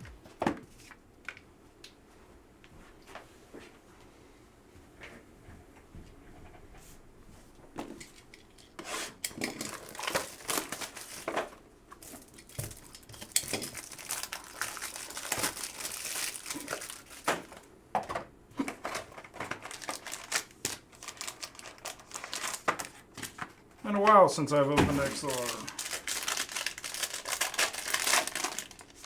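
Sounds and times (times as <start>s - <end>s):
plastic wrapping crinkling and tearing: 9.5s - 11.3s, 12.0s - 17.7s, 18.6s - 29.0s.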